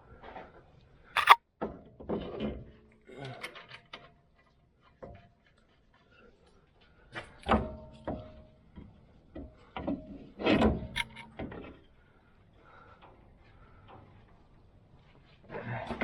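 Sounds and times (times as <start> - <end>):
metal tools clanking: 1.2 - 1.4, 11.0 - 11.4.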